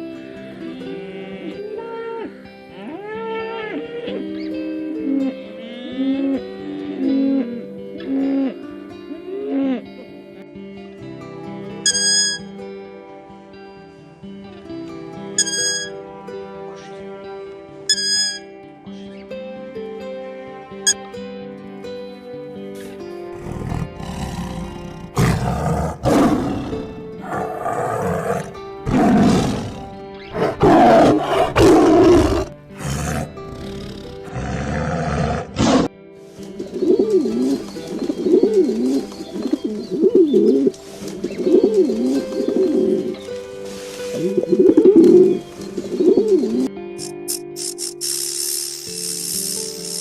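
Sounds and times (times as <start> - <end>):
background music: 0.0 - 50.0
big cat roaring: 23.3 - 35.9
bird cooing: 36.5 - 46.7.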